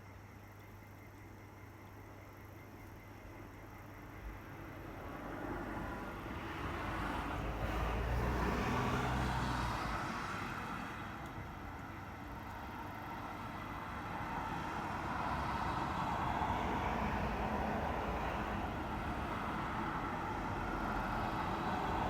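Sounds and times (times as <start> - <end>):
road traffic rushing: 5.0 - 22.0.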